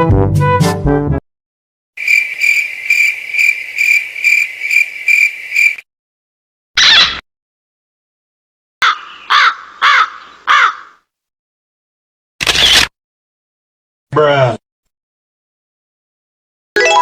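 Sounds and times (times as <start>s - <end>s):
brass music: 0.0s - 1.2s
crickets chirping: 2.0s - 5.8s.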